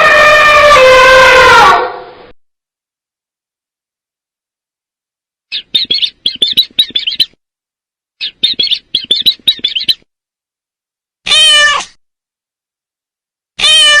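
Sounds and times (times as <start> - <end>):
high bird chirps: 5.5 - 7.4, 8.2 - 10.1
cat meow: 11.3 - 12.0, 13.6 - 14.0.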